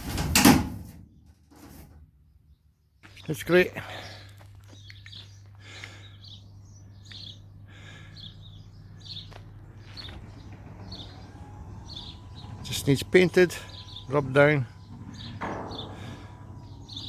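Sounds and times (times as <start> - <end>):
small birds chirping: 2.2 - 17.0
steady low hum: 5.3 - 17.0.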